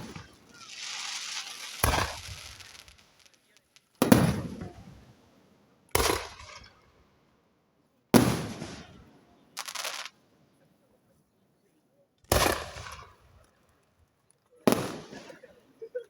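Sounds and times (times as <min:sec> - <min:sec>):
firework shells bursting: 0:00.0 - 0:04.8, 0:05.9 - 0:06.8, 0:08.2 - 0:10.1.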